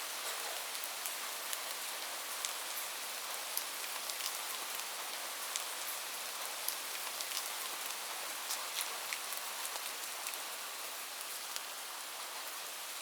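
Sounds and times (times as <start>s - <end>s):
steady rain hiss: 0.0s - 13.0s.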